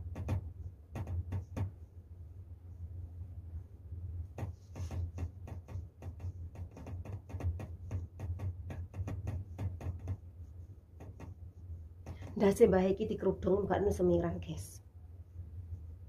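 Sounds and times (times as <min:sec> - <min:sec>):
steady low hum: 0:00.0 - 0:16.0
light irregular taps: 0:00.1 - 0:01.8, 0:04.3 - 0:12.7.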